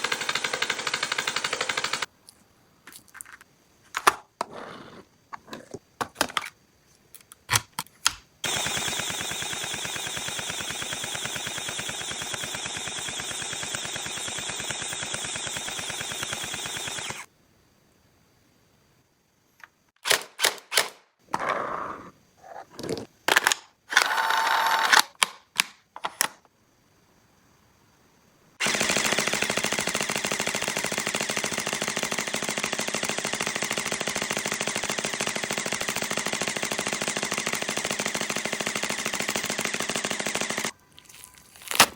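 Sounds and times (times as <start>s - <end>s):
toy gun fast rattle: 0.0s - 2.1s, 28.6s - 40.7s.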